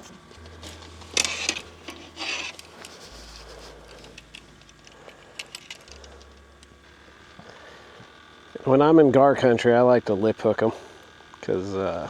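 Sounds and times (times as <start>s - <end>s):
tackle rustle or scrape: 0.0s - 4.4s
small metallic clicks: 0.0s - 6.8s.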